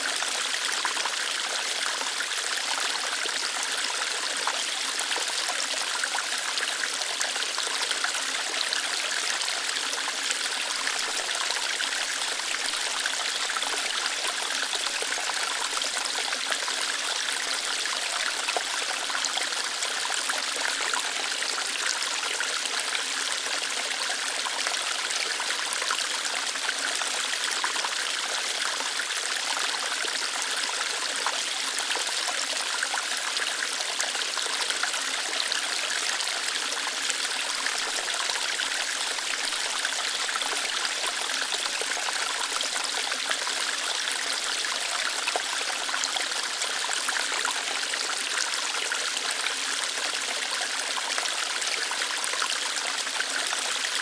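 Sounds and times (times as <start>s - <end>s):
small waterfall over rocks: 0.0s - 54.0s.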